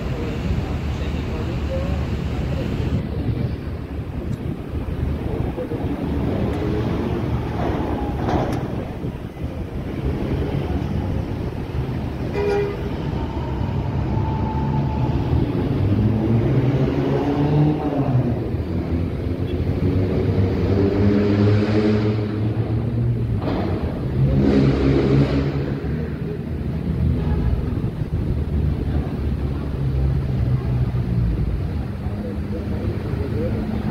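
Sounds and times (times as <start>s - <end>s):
bus engine running: 0.0s - 20.8s
musical bus horn tunes: 12.3s - 12.9s.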